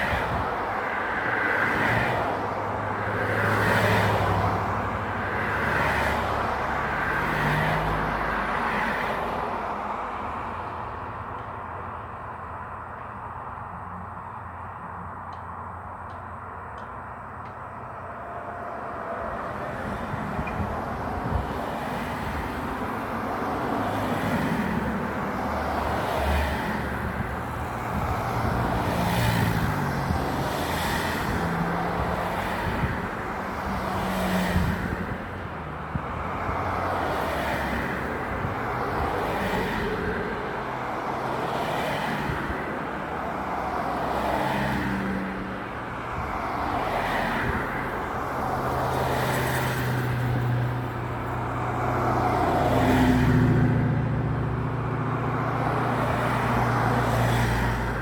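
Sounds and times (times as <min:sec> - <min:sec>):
cars and trucks passing: 0:00.0 - 0:58.0.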